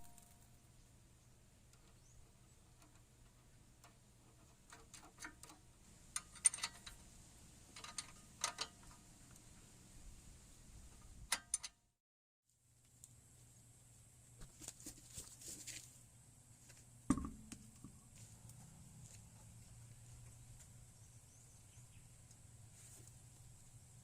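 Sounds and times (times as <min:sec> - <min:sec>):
metallic clicks of hand tools: 0:04.7 - 0:07.0, 0:07.7 - 0:09.0, 0:11.3 - 0:11.8.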